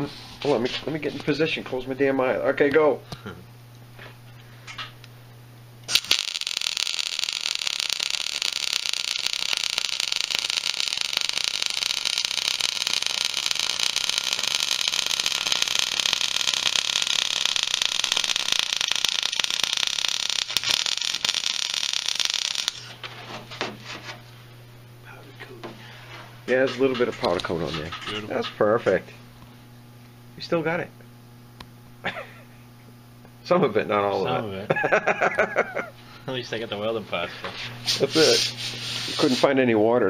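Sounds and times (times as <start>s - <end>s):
welder arc crackling: 5.0s - 24.4s, 34.8s - 39.7s.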